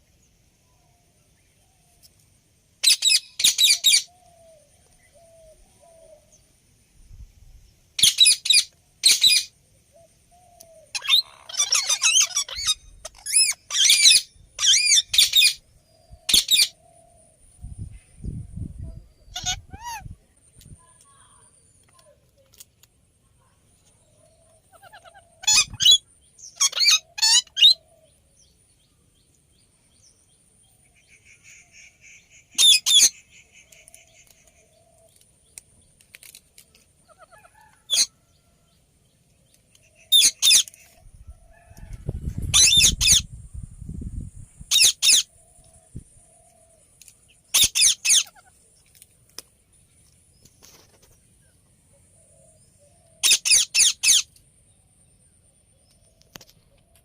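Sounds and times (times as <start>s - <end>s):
parrot screeching: 10.9s - 15.6s, 19.3s - 20.0s, 24.7s - 26.0s, 26.6s - 27.8s.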